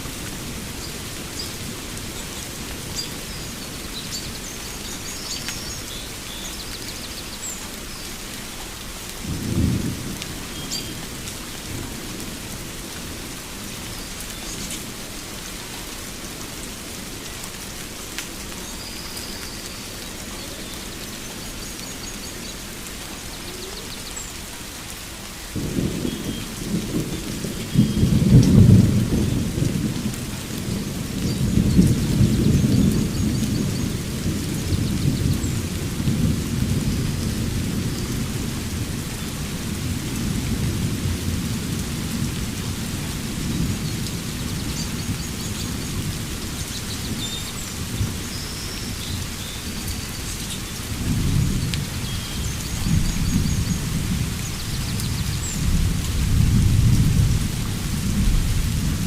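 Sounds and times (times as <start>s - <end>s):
steady rain: 0.0s - 59.0s
rolling thunder: 25.6s - 39.0s, 52.4s - 59.0s.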